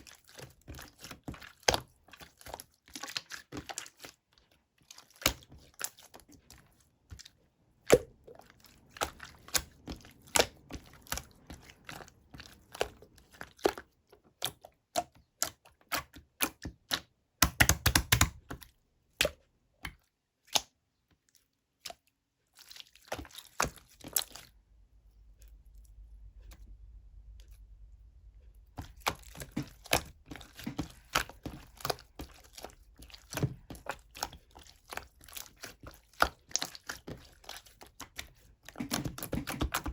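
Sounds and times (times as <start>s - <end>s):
faint low hum: 24.5s - 33.3s.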